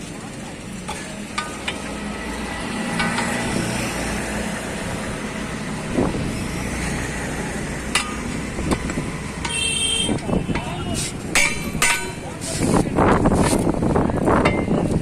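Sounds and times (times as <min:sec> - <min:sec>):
sharp knocks: 0:11.3 - 0:12.3.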